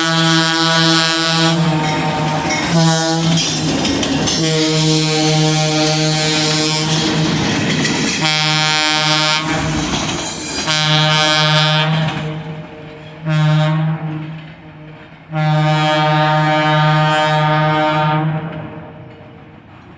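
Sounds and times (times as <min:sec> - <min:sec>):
locomotive air horn blasts: 0:00.0 - 0:03.5, 0:04.3 - 0:07.2, 0:08.2 - 0:09.8, 0:10.6 - 0:19.0
diesel engine and wheels: 0:00.0 - 0:15.6.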